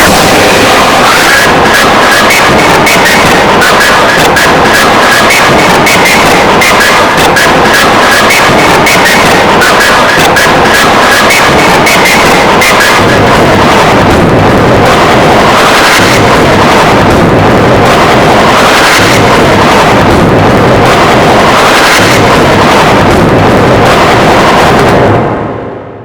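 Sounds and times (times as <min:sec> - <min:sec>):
distorted loud remix noise: 0:00.0 - 0:26.0.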